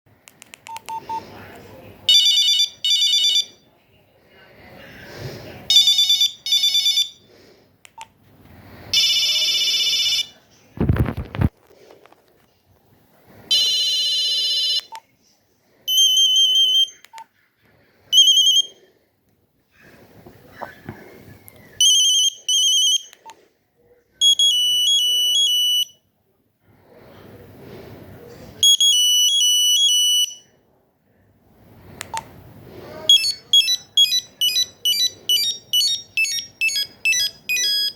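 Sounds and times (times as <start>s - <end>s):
mobile phone beep tones: 18.2s - 18.7s, 33.1s - 37.9s.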